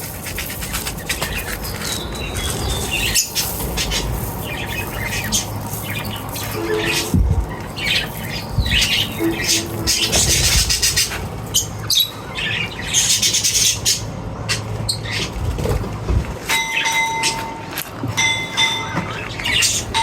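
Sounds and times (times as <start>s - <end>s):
small animals chirping and squawking: 0.0s - 15.8s.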